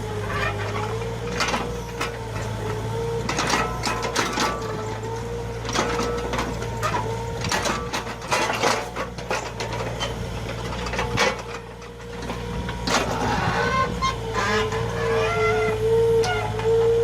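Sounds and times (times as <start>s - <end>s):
diesel engine running: 0.0s - 17.0s
sharp metal clanks and knocks: 5.7s - 13.2s.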